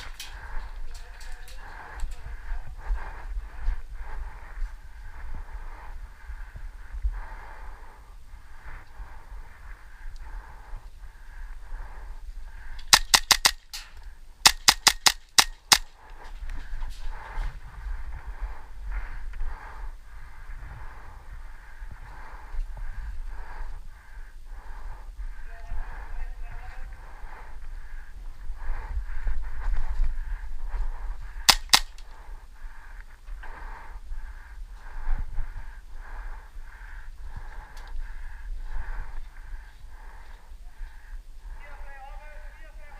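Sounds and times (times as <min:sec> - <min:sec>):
rhythmic breathing: 0:00.0 - 0:13.8, 0:14.4 - 0:41.7
airsoft gun shots: 0:12.9 - 0:13.7, 0:14.4 - 0:15.9, 0:31.5 - 0:32.0.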